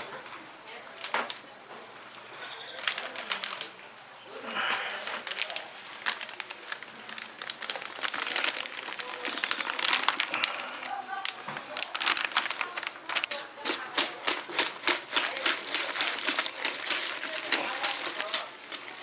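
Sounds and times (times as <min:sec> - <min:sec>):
crinkling: 0:02.7 - 0:03.8, 0:04.4 - 0:19.0
background voices: 0:04.3 - 0:19.0.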